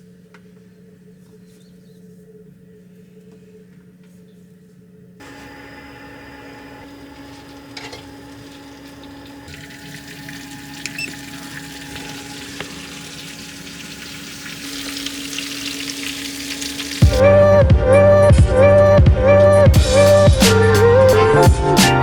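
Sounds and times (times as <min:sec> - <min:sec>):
food sizzling in a pan: 0:08.4 - 0:17.2.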